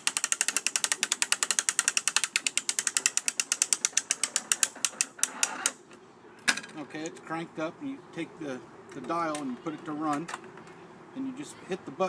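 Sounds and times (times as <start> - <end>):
starter ratchet clicking rapidly: 0.0 - 5.8.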